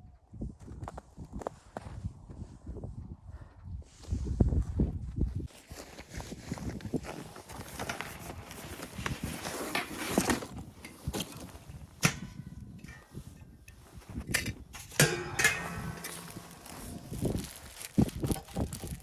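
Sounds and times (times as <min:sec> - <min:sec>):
handling and rustling noises: 0:05.5 - 0:19.0.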